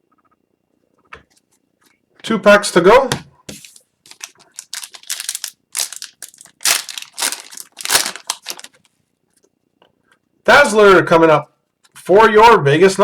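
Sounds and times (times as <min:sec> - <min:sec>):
plastic wrapper tearing and crinkling: 0:03.6 - 0:08.9.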